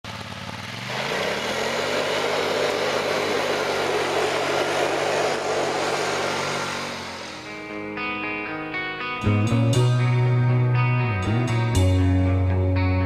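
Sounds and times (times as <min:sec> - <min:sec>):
atv engine revving: 0:00.0 - 0:07.8.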